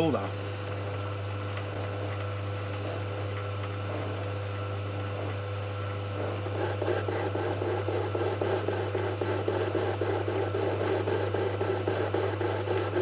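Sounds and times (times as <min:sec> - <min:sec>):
lathe motor hum: 0:06.2 - 0:13.0.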